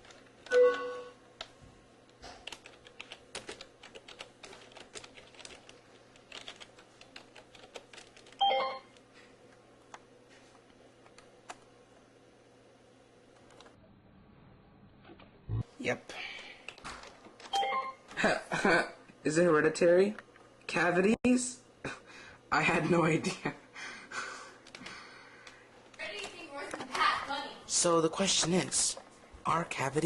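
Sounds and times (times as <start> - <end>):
typing on computer keyboard: 2.3 - 8.5.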